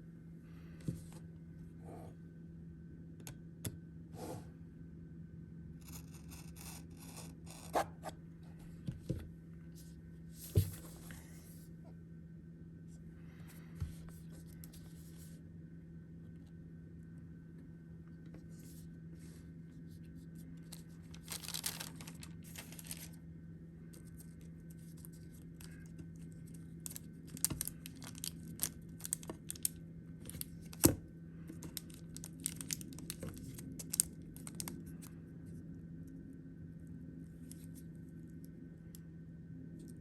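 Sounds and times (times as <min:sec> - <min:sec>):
steady low hum: 0:00.0 - 0:40.0
packaging crinkling and rustling: 0:20.6 - 0:23.2, 0:23.9 - 0:35.2
small clicks and crackles: 0:20.6 - 0:23.2, 0:23.8 - 0:30.9, 0:31.5 - 0:35.2.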